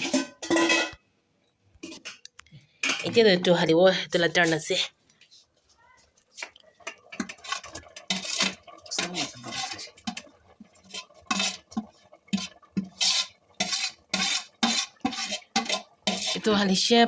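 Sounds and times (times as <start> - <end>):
spoon scraping a cooking pot: 0.0 - 1.0, 1.8 - 3.6, 6.2 - 17.0.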